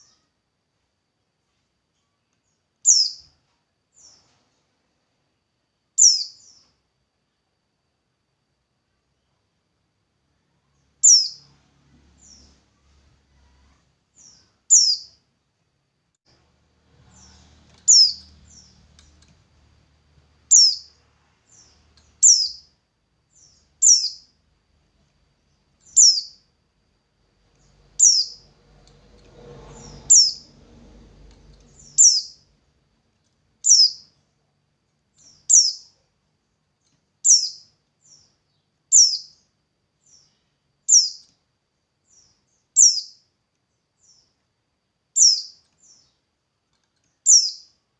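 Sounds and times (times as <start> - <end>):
bird chirping: 0.0 - 0.4, 1.9 - 4.4, 6.0 - 6.8, 10.3 - 15.3, 16.3 - 24.4, 25.4 - 26.6, 27.4 - 32.8, 33.6 - 34.4, 35.1 - 36.2, 36.8 - 44.5, 45.1 - 47.9.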